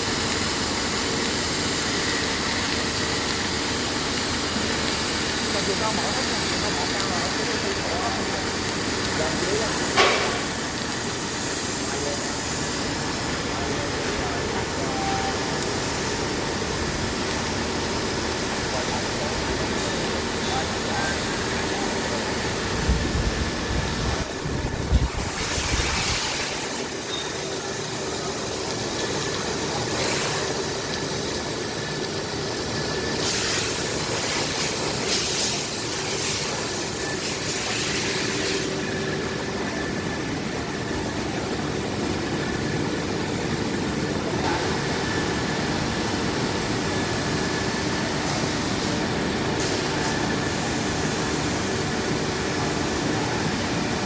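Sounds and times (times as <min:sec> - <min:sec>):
industrial machine noise: 0:00.0 - 0:54.0
loud hiss: 0:24.6 - 0:27.0.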